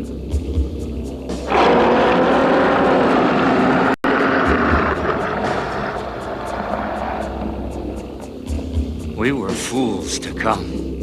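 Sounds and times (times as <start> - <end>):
monster roar: 1.5 - 7.7.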